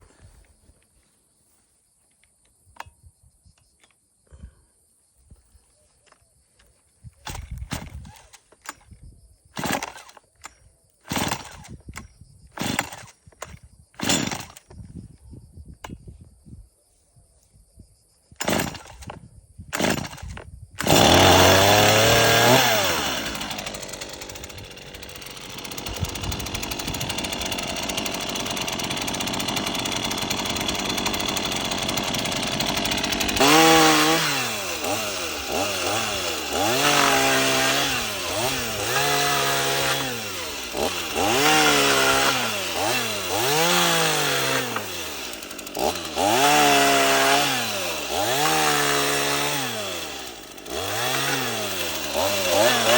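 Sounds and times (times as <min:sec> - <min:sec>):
chainsaw revving: 0:09.6 - 0:10.2, 0:11.1 - 0:11.7, 0:12.6 - 0:13.1, 0:14.0 - 0:14.6, 0:18.4 - 0:19.1, 0:19.7 - 0:52.9.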